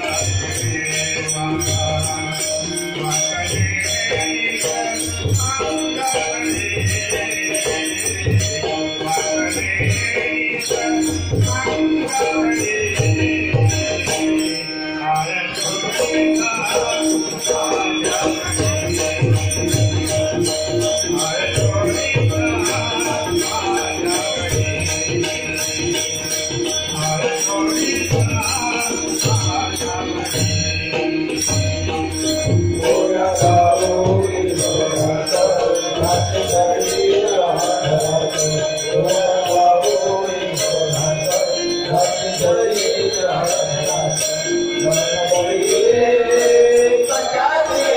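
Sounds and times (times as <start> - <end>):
hand cymbals jingling: 0.0 - 47.9
group devotional singing: 44.8 - 47.9.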